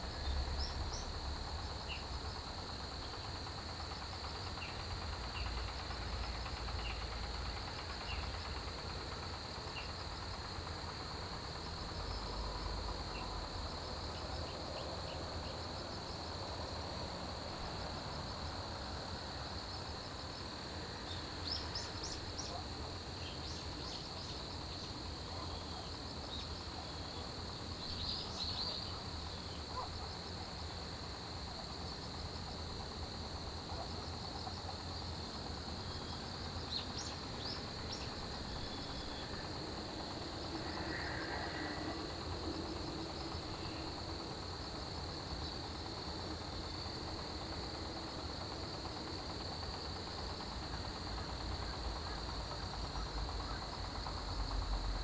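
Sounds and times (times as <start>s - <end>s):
crickets trilling: 0.0s - 55.0s
high insect pulsing: 34.2s - 55.0s.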